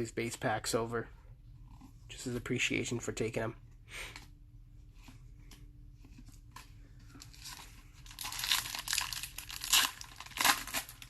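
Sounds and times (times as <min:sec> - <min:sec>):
foil wrappers crinkling and tearing: 0:07.2 - 0:11.0.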